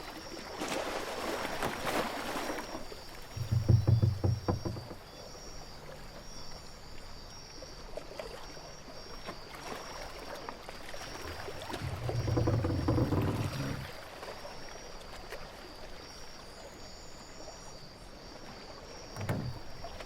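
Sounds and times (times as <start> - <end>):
water lapping against boat: 0.0 - 20.0
low knocks: 3.3 - 5.1, 11.2 - 13.9, 19.2 - 20.0.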